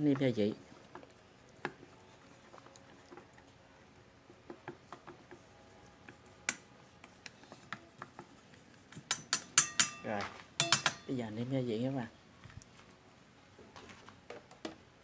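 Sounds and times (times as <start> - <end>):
utensil tapping a bowl: 9.0 - 10.0, 10.6 - 11.1.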